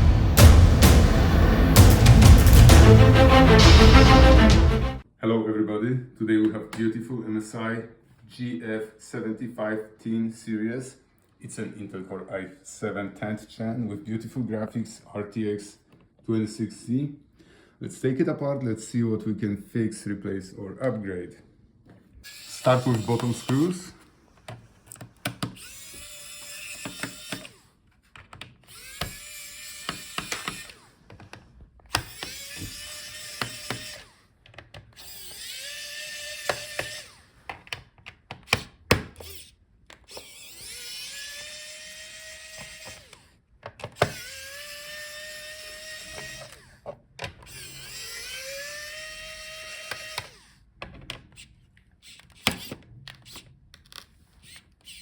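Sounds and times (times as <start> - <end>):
bit and screws clicking: 22.2 - 55.0
electric screwdriver whining: 22.2 - 55.0.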